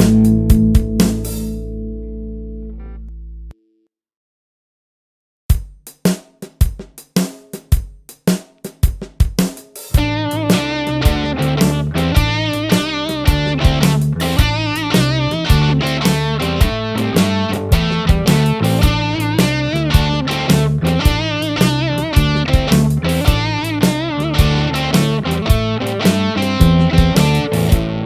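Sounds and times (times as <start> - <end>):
electric guitar over drums: 0.0 - 2.0, 10.0 - 28.0.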